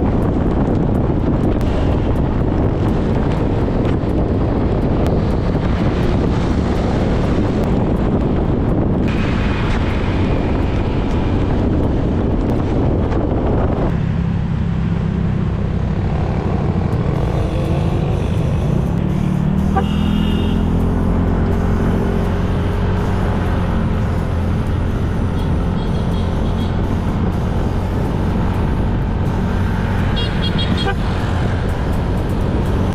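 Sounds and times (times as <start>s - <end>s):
motorcycle engine hum: 0.0s - 32.9s
wind buffeting microphone: 0.0s - 32.9s.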